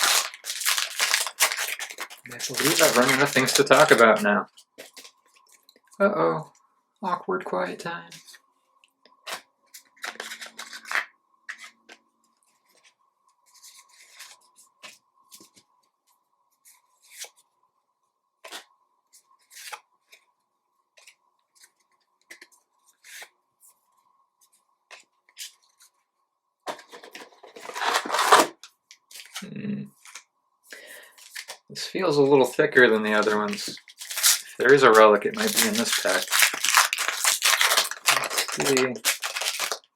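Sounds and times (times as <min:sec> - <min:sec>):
card pack wrapper tearing: 0:00.0 - 0:04.2, 0:27.6 - 0:30.2, 0:31.2 - 0:31.6, 0:33.1 - 0:39.9
cards rustling and clicking: 0:00.0 - 0:05.7, 0:09.2 - 0:12.0, 0:21.0 - 0:23.3, 0:26.7 - 0:30.3, 0:31.0 - 0:31.6, 0:33.1 - 0:39.9.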